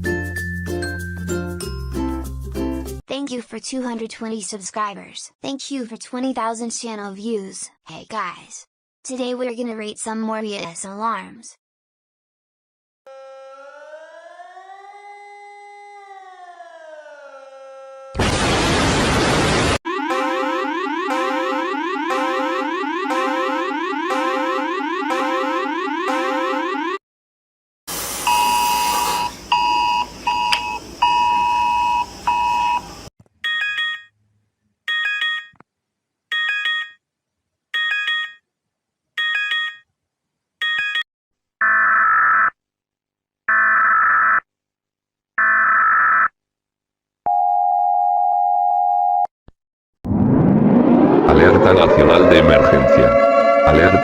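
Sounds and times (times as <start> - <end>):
siren rising: 13.1 - 18.2, 19.9 - 27.0, 50.0 - 54.0
steady electronic tone: 28.1 - 29.7, 50.1 - 54.0.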